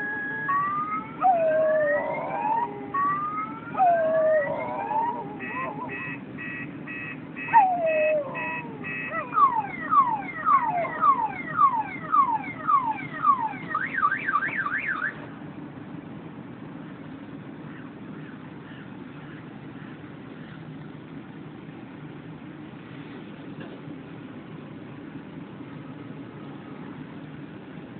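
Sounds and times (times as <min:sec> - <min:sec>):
dog howling: 0:00.0 - 0:06.0
car alarm siren: 0:00.0 - 0:15.2.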